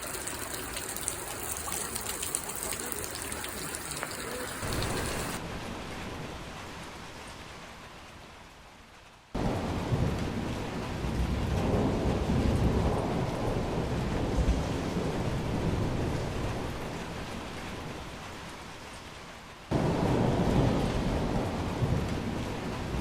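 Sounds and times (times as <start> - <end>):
rush of water: 0.0 - 7.2
heavy rain: 0.0 - 23.0.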